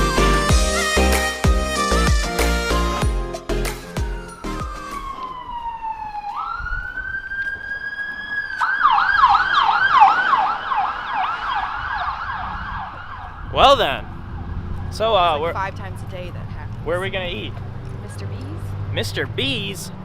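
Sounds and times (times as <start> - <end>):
emergency vehicle siren: 3.8 - 15.7.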